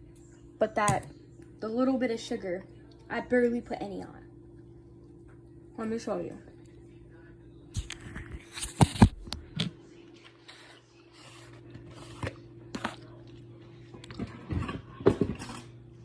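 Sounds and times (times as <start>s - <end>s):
faint steady hum: 0.0s - 16.0s
objects knocking and scraping: 14.2s - 15.7s.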